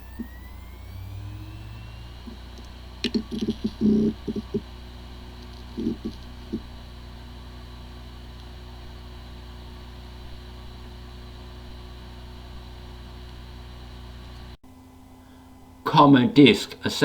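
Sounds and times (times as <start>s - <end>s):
hard drive heads ticking: 0.0s - 14.6s
hard drive whining and humming: 0.0s - 17.0s.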